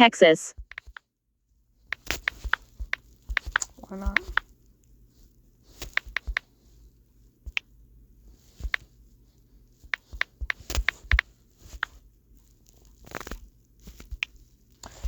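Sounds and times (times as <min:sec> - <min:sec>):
fingers tapping phone touchscreen: 0:00.6 - 0:01.1, 0:01.9 - 0:04.6, 0:05.8 - 0:06.5, 0:07.5 - 0:07.7, 0:08.6 - 0:08.9, 0:09.8 - 0:12.0.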